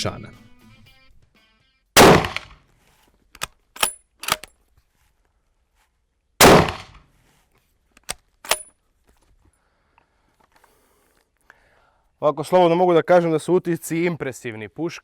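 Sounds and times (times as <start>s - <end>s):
rifle bolt metallic clicks: 2.0s - 2.5s, 3.4s - 4.6s, 6.4s - 7.0s, 8.0s - 8.8s
rifle shots: 2.0s - 2.6s, 6.4s - 7.0s.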